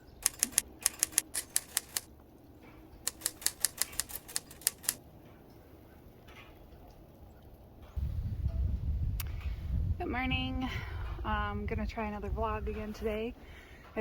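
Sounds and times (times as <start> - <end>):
rapid sharp clicks: 0.0 - 2.1, 3.0 - 5.0.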